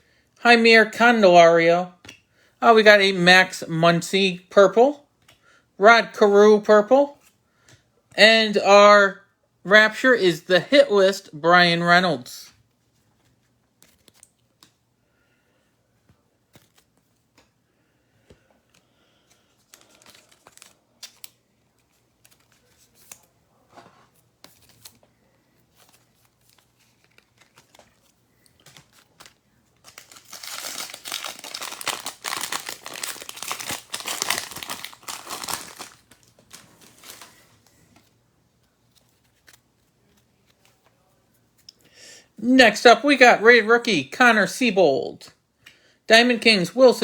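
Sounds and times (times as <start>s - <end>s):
wrapper crinkling and tearing: 19.3s - 23.3s, 25.7s - 38.1s.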